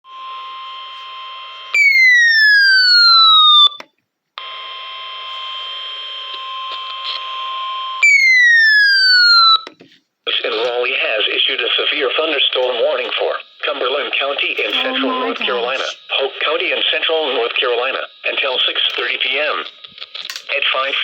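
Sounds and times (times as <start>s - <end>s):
steady high alert tone: 14.6s - 16.0s
downward sliding alert tones: 14.7s - 16.0s.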